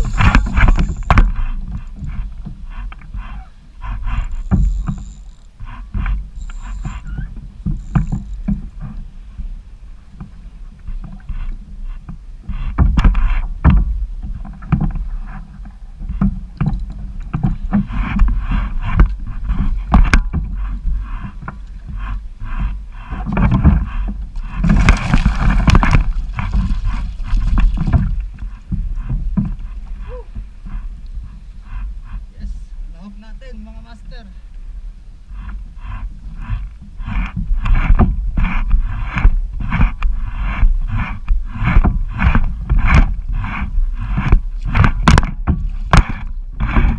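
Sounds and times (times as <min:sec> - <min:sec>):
water slapping: 0:00.0 - 0:05.1, 0:13.7 - 0:32.6
wind rumbling on microphone: 0:00.0 - 0:46.9.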